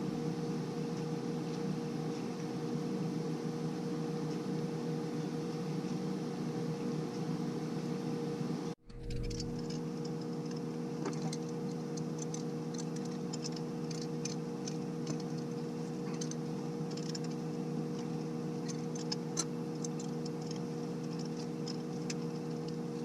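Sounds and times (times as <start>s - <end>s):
steady hum: 6.1s - 23.0s.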